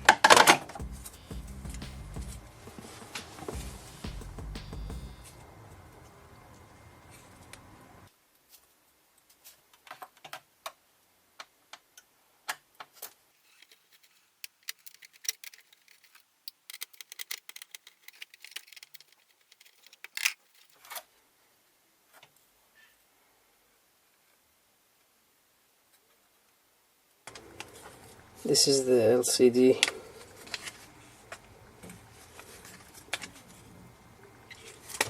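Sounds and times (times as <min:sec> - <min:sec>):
clicks of plastic being taken apart: 0:13.4 - 0:20.8.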